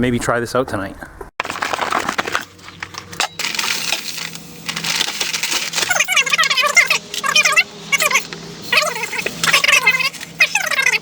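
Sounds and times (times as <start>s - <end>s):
welding arc crackling: 2.3s - 11.0s.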